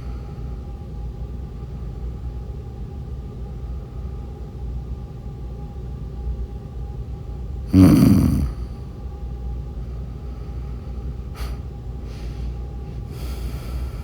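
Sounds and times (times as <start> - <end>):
woman snoring: 7.7 - 8.7
soft breath: 10.0 - 14.0.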